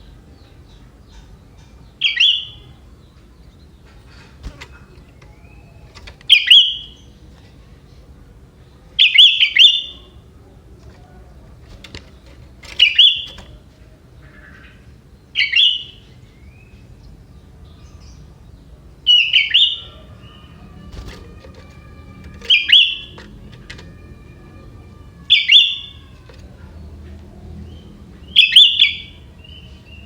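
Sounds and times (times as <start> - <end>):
bulbul singing: 0.0 - 30.0.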